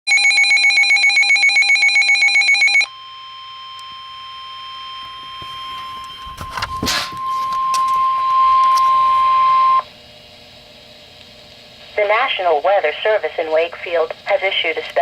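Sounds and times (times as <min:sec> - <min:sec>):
steady warning alarm tone: 0:00.1 - 0:09.9
electronic pulsing signal: 0:01.4 - 0:09.9.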